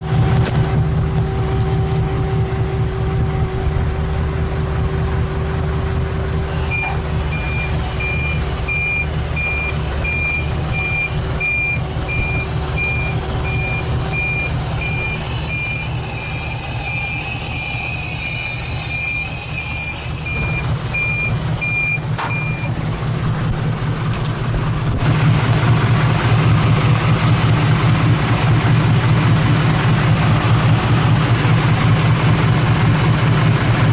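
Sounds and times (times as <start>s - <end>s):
fuel pump whining: 0.0s - 33.9s
truck engine running: 0.0s - 33.9s
warning beeper: 6.5s - 22.8s.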